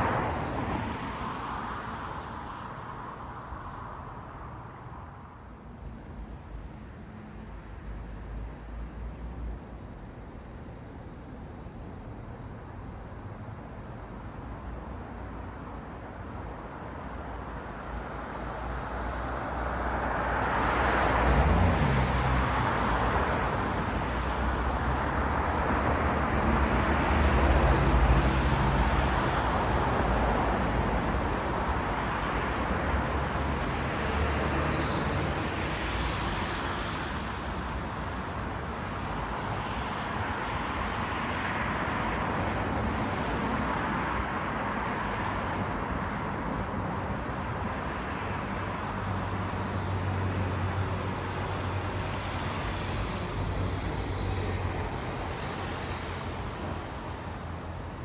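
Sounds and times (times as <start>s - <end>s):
cars passing: 18.3s - 58.0s.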